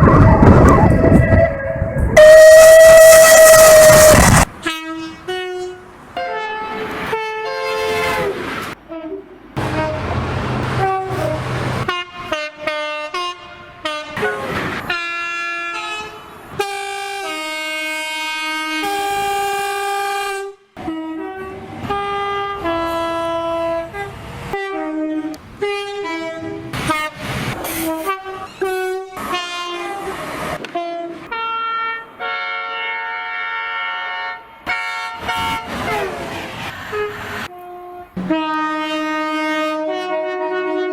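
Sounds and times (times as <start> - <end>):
train running noise: 0.0 - 4.7, 5.6 - 12.5, 20.8 - 31.4, 34.4 - 40.0
two-tone train horn blasts: 0.9 - 36.1, 36.9 - 40.9.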